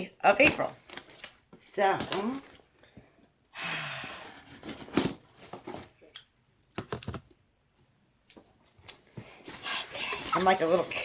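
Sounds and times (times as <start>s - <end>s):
cardboard rustling: 4.4s - 6.0s, 9.2s - 11.0s.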